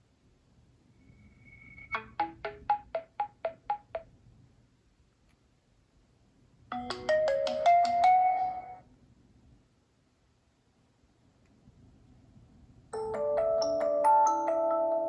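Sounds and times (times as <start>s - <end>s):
plucked ringtone notes: 1.9s - 4.1s, 6.7s - 8.8s.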